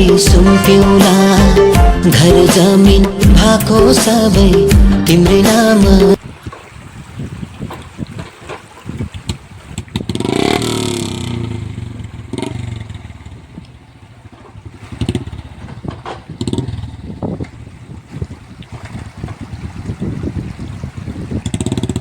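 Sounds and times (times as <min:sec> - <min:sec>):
motorcycle engine revving and popping: 0:09.2 - 0:22.0.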